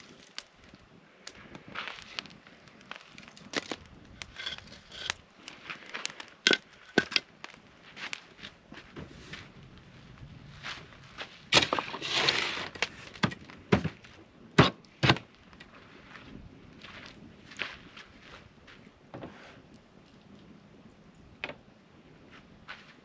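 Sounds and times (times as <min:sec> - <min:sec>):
campfire crackling and popping: 0:00.0 - 0:23.0
footsteps crunching: 0:01.4 - 0:13.2, 0:15.3 - 0:19.6.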